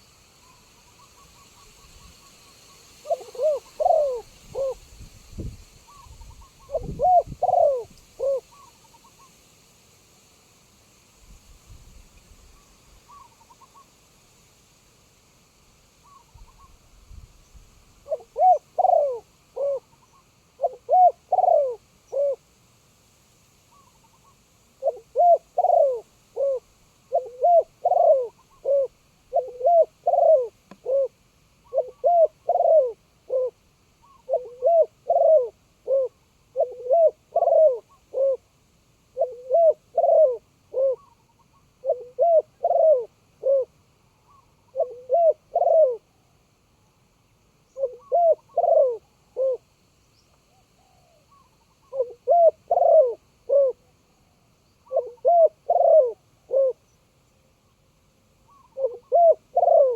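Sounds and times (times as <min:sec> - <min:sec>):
dove cooing: 0:03.0 - 0:09.3, 0:18.0 - 0:22.4, 0:24.8 - 0:38.5, 0:39.1 - 0:46.2, 0:47.7 - 0:49.7, 0:50.8 - 0:53.9, 0:54.8 - 0:56.9, 0:58.4 - 0:59.9.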